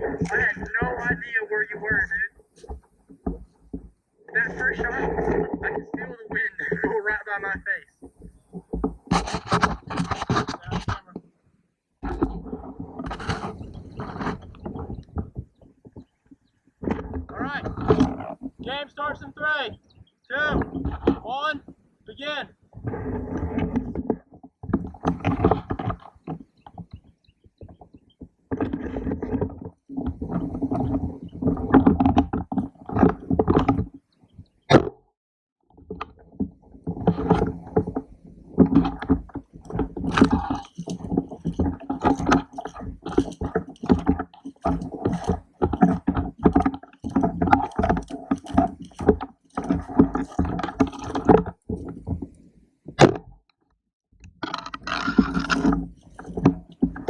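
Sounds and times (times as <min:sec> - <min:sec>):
rustling and scraping: 0:00.0 - 0:11.4, 0:12.0 - 0:34.9, 0:35.7 - 0:53.5, 0:54.3 - 0:57.0.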